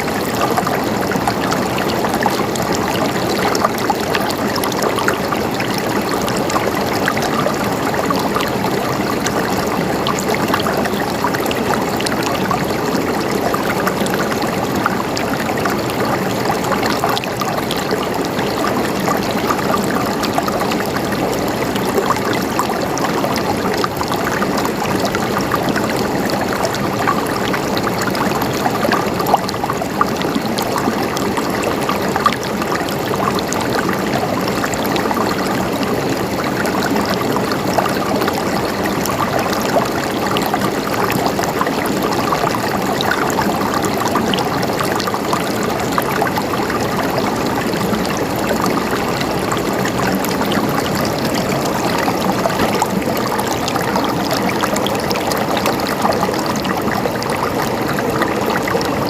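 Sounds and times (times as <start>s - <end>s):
running water gurgling: 0.0s - 59.0s
small water splashes: 0.0s - 59.0s.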